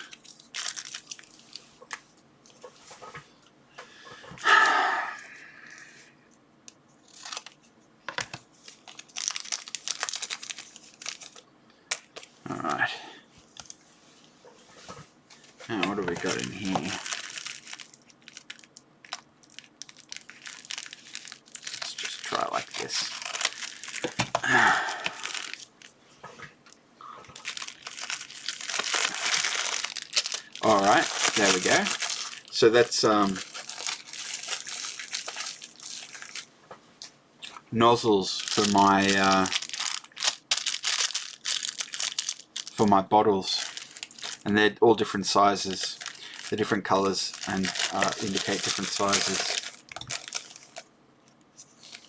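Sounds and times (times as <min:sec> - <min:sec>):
plastic bags crinkling: 0:00.0 - 0:02.2, 0:07.1 - 0:12.8, 0:15.7 - 0:26.0, 0:27.2 - 0:36.5, 0:37.8 - 0:50.9, 0:51.6 - 0:52.0.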